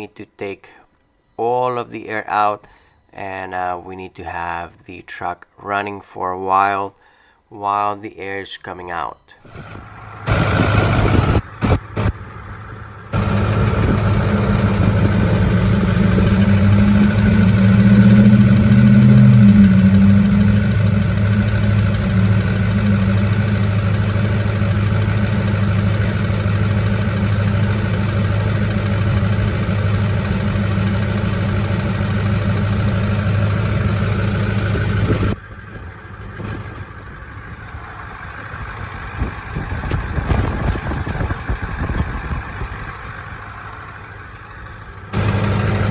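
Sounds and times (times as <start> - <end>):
diesel engine idling: 9.5 - 45.9.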